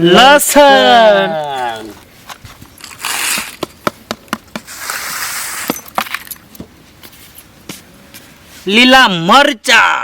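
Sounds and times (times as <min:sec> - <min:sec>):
scraping rustle: 0:01.7 - 0:03.7, 0:04.5 - 0:08.7.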